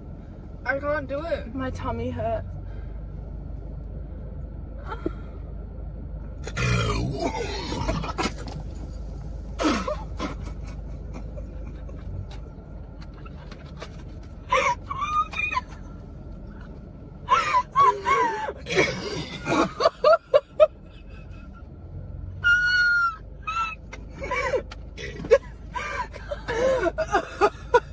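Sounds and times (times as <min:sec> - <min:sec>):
young women laughing: 0:09.6 - 0:12.2, 0:14.5 - 0:15.9, 0:17.3 - 0:21.6, 0:23.0 - 0:27.9.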